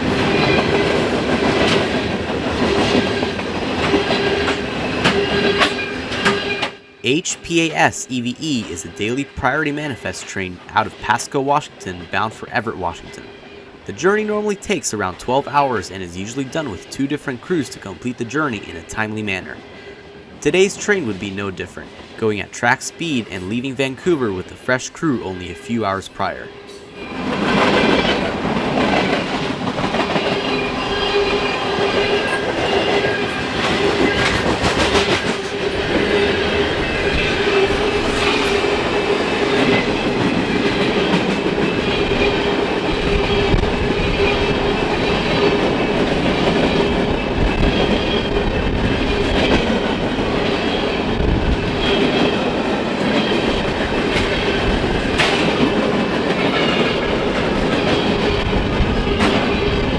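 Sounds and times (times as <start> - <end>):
wheels clicking over rail joints: 0.0 - 6.8, 27.1 - 59.9
freight train rolling past: 0.0 - 59.9.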